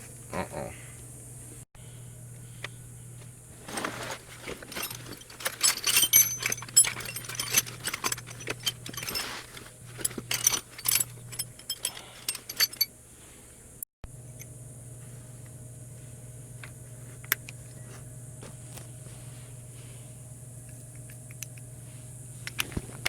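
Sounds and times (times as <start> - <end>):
steady low hum: 0.0 - 23.0
metal tools clinking and rattling: 3.6 - 12.9.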